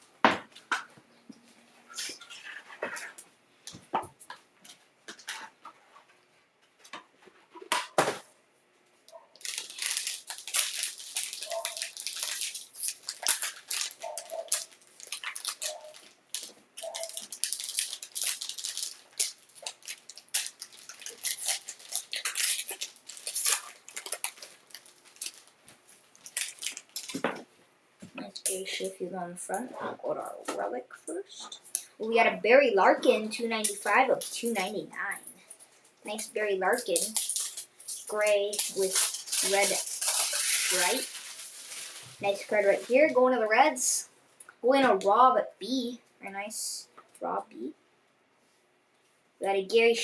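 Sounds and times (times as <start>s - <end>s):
plastic wrapping tearing and crinkling: 9.4s - 27.4s, 33.6s - 43.5s.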